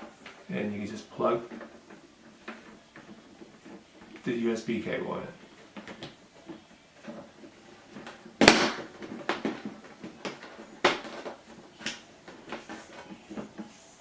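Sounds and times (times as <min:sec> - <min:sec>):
hard plastic knocks: 0:05.4 - 0:13.7.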